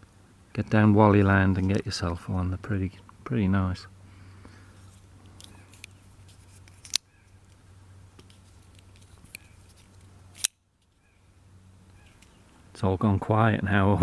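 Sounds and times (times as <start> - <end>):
pocket knife metallic clicks: 10.4 - 10.6.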